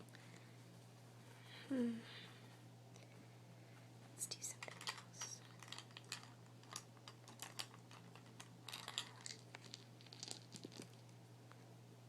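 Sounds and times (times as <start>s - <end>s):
faint steady hum: 0.0s - 12.0s
crinkling: 4.4s - 11.2s
tapping of small objects: 5.6s - 11.0s.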